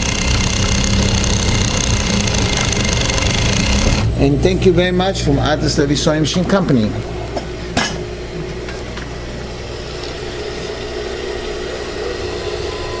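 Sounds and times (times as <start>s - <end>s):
sewing machine motor humming: 0.0s - 4.6s.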